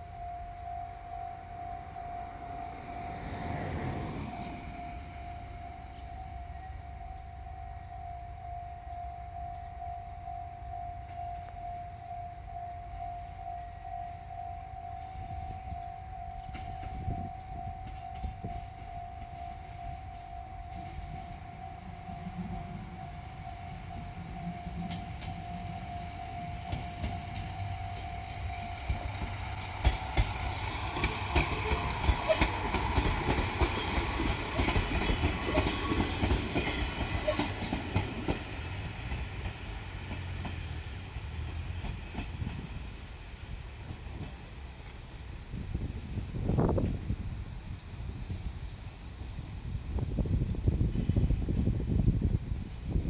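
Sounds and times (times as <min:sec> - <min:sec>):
diesel train passing: 0:00.0 - 0:53.0
train wheels clattering over rail joints: 0:24.0 - 0:43.0.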